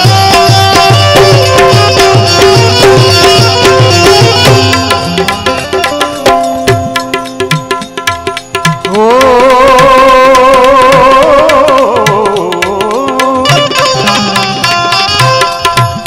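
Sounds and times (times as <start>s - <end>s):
wavering held melody note: 0.0s - 8.4s, 13.5s - 16.0s
rapid hand-drum strokes: 0.0s - 16.0s.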